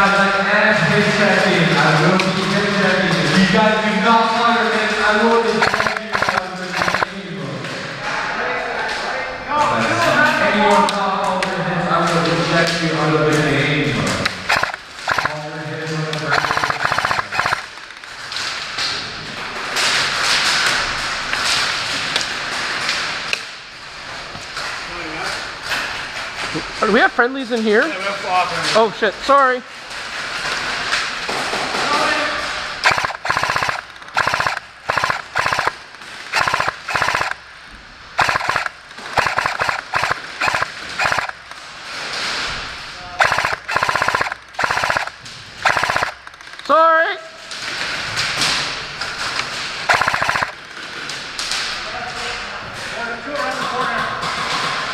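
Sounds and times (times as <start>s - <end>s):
airsoft gun firing bursts: 5.5s - 7.1s, 14.4s - 15.5s, 16.2s - 17.9s, 32.8s - 37.5s, 38.2s - 41.5s, 43.2s - 46.6s, 49.9s - 50.6s
sharp taps: 5.6s - 7.1s, 14.4s - 15.4s, 16.3s - 17.7s, 38.2s - 41.4s, 43.2s - 46.6s, 49.9s - 50.6s.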